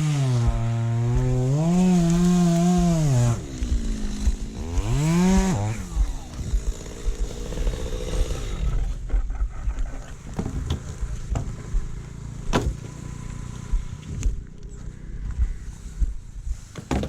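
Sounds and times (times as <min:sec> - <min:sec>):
chainsaw idling: 0:00.0 - 0:16.7
low rumble on microphone: 0:00.0 - 0:16.9
sharp knocks: 0:10.2 - 0:13.0.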